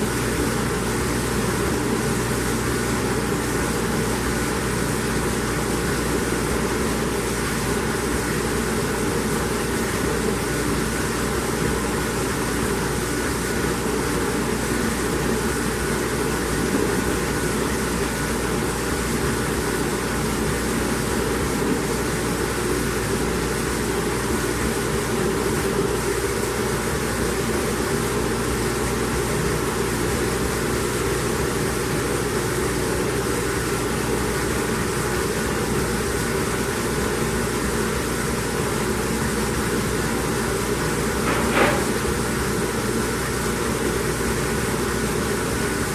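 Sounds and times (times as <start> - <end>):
dishwasher whirring: 0.0 - 45.9.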